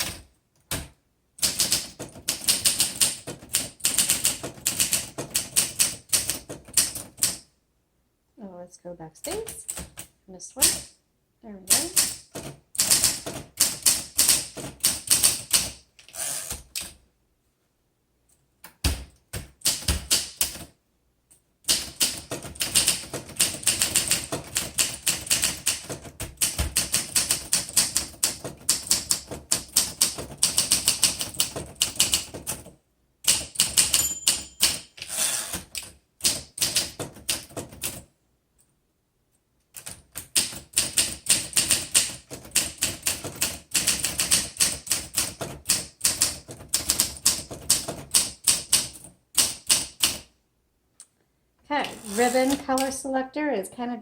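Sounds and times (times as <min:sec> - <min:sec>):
typewriter keys clacking: 0:33.3 - 0:38.0, 0:39.8 - 0:50.2.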